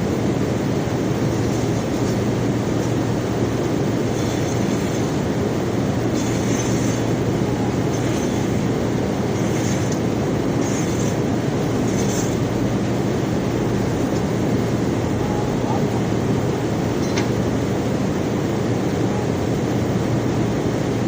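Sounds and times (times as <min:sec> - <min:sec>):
conveyor belt rumbling: 0:00.0 - 0:21.0.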